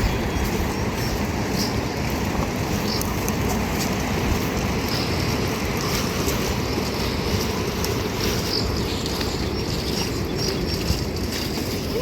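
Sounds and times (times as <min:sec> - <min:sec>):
heavy rain falling: 0:00.0 - 0:12.0.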